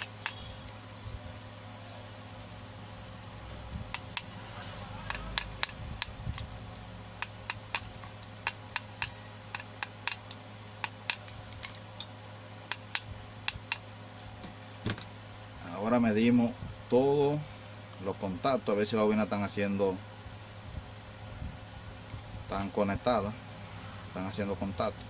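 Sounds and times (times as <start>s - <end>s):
sharp tool clicks: 0.0s - 0.8s, 3.5s - 4.4s, 5.0s - 6.6s, 7.2s - 12.1s, 12.7s - 14.6s.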